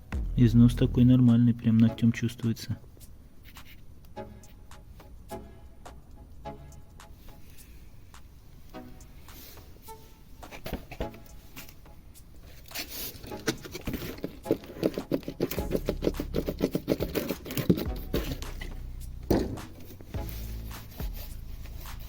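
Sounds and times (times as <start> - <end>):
rapid clicking and scraping: 12.5 - 20.0
hand tool clicking and knocking: 13.3 - 19.9.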